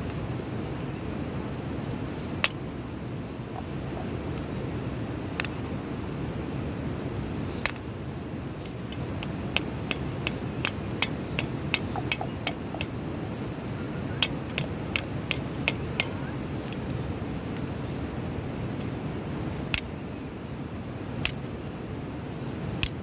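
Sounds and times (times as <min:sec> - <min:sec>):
sharp rhythmic taps: 0:08.9 - 0:13.0.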